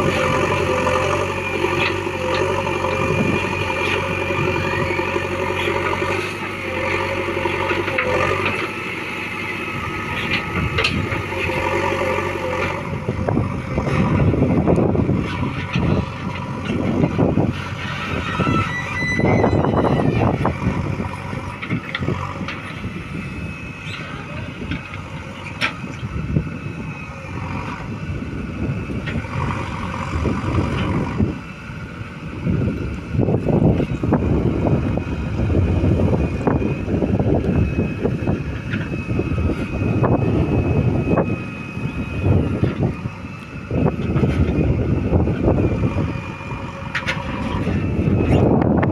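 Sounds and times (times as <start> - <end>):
diesel engines running: 0.0 - 48.9
faint high whine: 22.5 - 32.9, 33.7 - 48.9.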